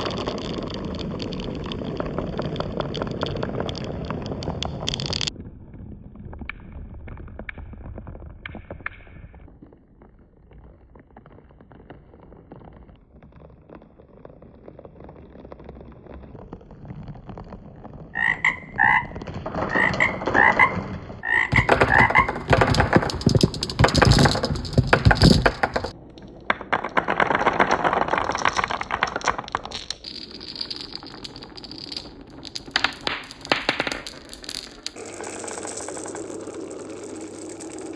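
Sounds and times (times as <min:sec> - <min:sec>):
marbles rolling on marble run: 0:00.0 - 0:05.3, 0:10.4 - 0:37.9
short croaking calls: 0:18.2 - 0:22.3.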